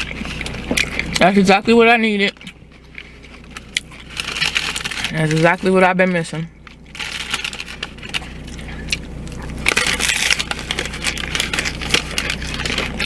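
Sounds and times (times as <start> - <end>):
chewing crunchy taco shell: 0.0 - 13.0.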